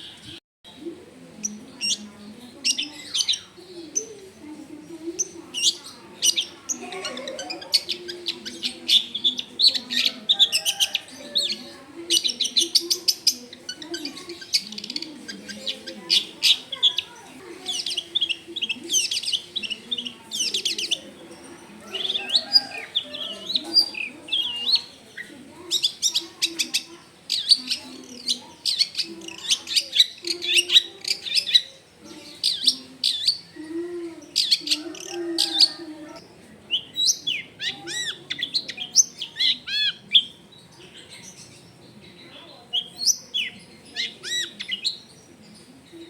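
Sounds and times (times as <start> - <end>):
bird harsh rapid chattering: 5.1 - 33.5, 36.7 - 41.6, 42.7 - 45.6.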